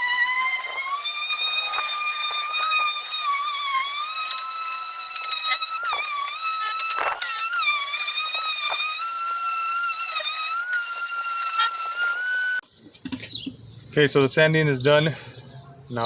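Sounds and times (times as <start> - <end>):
power sander whine: 0.0 - 12.6.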